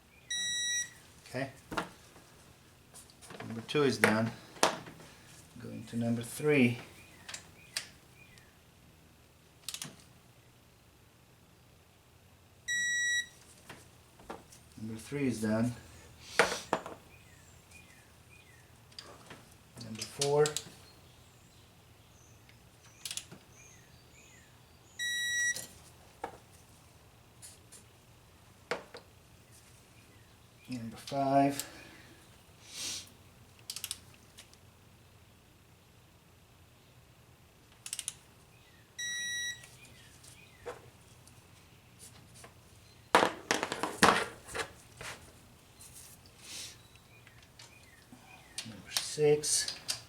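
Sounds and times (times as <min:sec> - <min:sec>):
torque wrench beeping: 0:00.3 - 0:01.0, 0:12.7 - 0:13.3, 0:25.0 - 0:25.6
sharp clicks: 0:09.6 - 0:10.0, 0:22.9 - 0:23.4, 0:33.6 - 0:34.1, 0:37.7 - 0:38.2.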